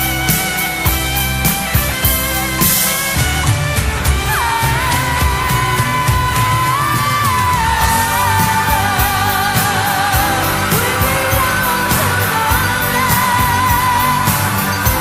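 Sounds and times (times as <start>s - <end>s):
rock band playing: 0.0s - 15.0s
woman singing with vibrato: 4.0s - 15.0s.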